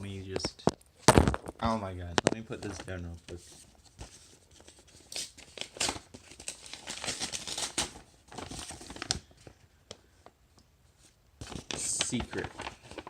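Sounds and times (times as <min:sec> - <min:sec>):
paper crinkling and tearing: 0:02.3 - 0:09.4, 0:11.4 - 0:13.0.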